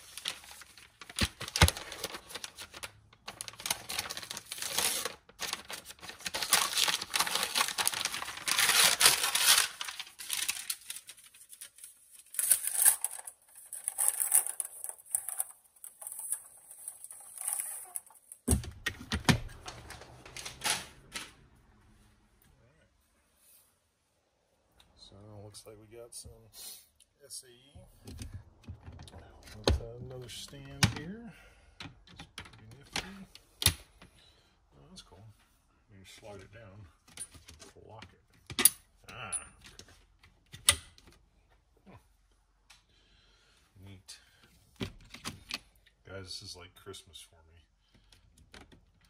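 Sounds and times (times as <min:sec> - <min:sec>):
packaging rustling and crinkling: 0:00.0 - 0:18.4.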